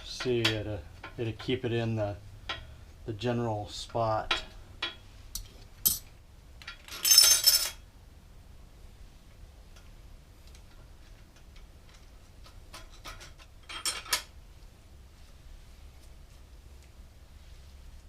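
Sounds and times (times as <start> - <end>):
metallic clicks and clinks of tools: 4.3 - 7.8.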